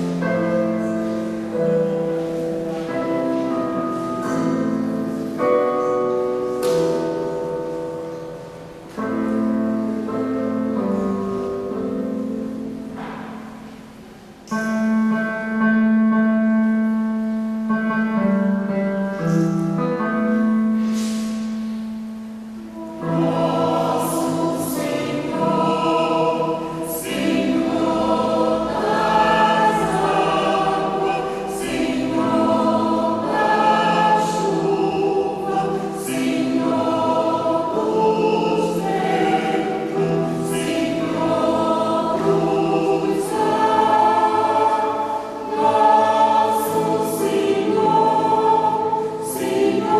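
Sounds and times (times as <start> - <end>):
piano accompaniment: 0.0 - 49.9
choir singing: 22.7 - 49.9.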